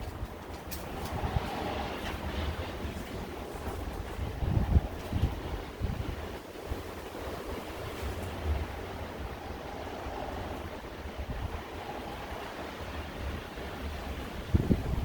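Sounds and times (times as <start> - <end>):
gusting low rumble: 0.0 - 6.4
blizzard wind blowing: 0.0 - 15.0.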